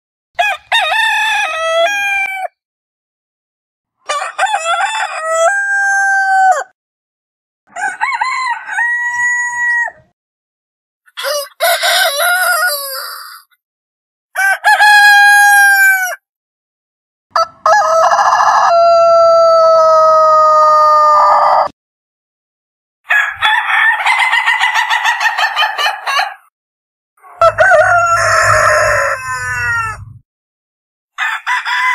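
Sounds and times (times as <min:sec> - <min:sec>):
rooster crowing: 0:00.4 - 0:02.5, 0:04.1 - 0:06.7, 0:07.7 - 0:10.1, 0:11.2 - 0:13.4, 0:14.4 - 0:16.2, 0:17.4 - 0:21.7, 0:23.1 - 0:26.5, 0:27.2 - 0:30.2, 0:31.2 - 0:31.9.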